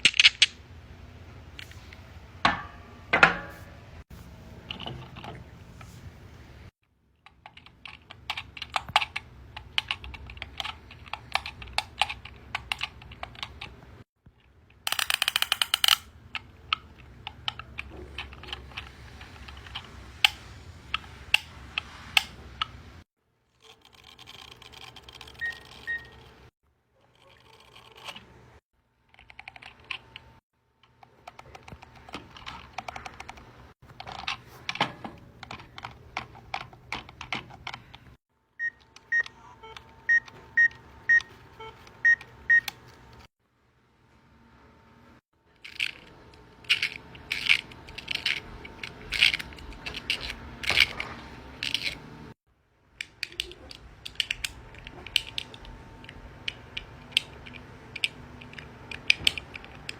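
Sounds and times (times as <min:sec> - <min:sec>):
plastic fidget toy clicks: 0:14.9 - 0:16.1.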